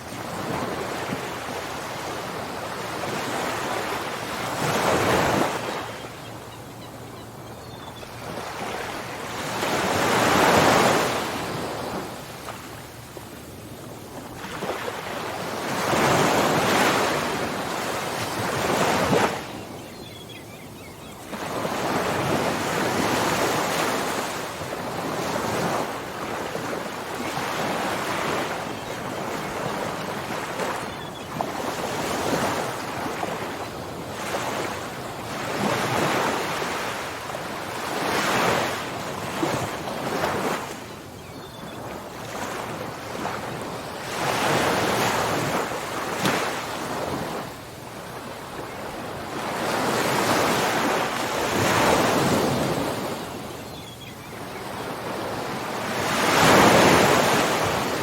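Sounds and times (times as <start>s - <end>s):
ocean surf breaking on shore: 54.7s - 58.0s.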